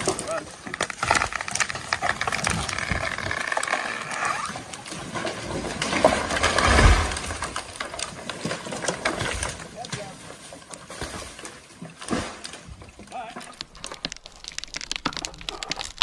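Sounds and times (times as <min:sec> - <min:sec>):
heavy crash of falling tree: 0:00.0 - 0:10.1
branches cracking and snapping: 0:00.0 - 0:16.0.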